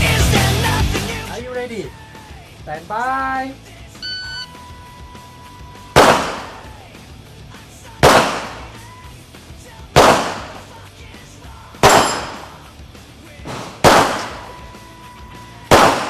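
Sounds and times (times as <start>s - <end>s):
handgun shots ringing: 6.0s - 6.7s, 8.0s - 8.8s, 10.0s - 10.7s, 11.8s - 12.6s, 13.5s - 14.6s, 15.7s - 16.0s.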